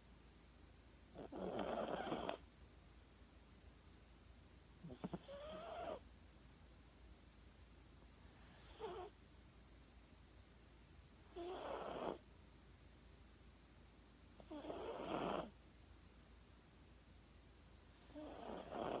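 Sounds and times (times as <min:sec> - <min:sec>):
dog snoring: 0:01.1 - 0:02.4, 0:04.8 - 0:06.0, 0:08.4 - 0:09.2, 0:11.3 - 0:12.2, 0:14.4 - 0:15.6, 0:18.0 - 0:19.0.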